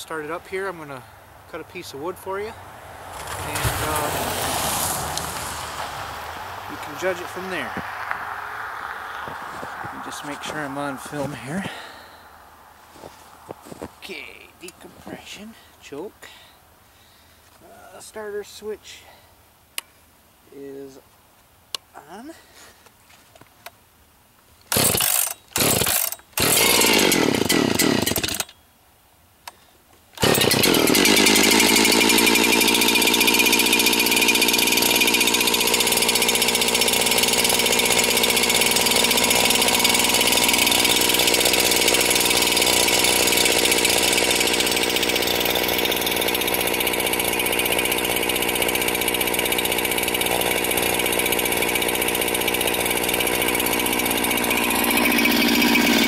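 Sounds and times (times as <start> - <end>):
chainsaw engine running: 0.0 - 12.2, 24.7 - 28.5, 30.2 - 56.0
chainsaw starter cord pulls: 3.2 - 5.5, 6.7 - 7.8, 9.2 - 12.1, 24.7 - 28.6, 30.2 - 56.0.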